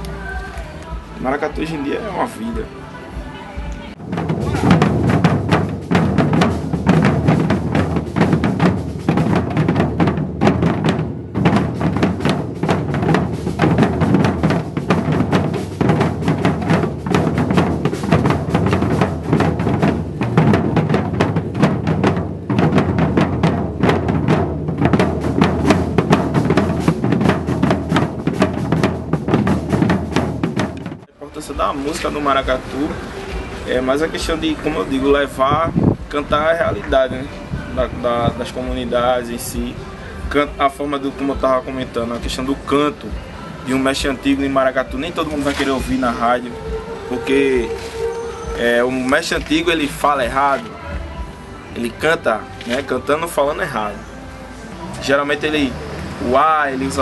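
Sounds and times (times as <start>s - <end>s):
percussion ensemble drumming: 1.0s - 2.7s, 3.6s - 54.0s, 54.7s - 57.0s.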